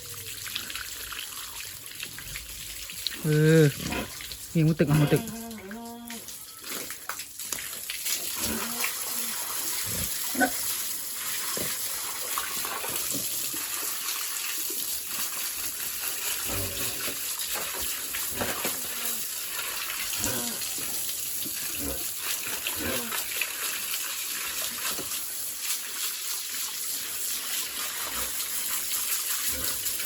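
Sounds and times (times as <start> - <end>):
water running from a hose: 0.0 - 30.0.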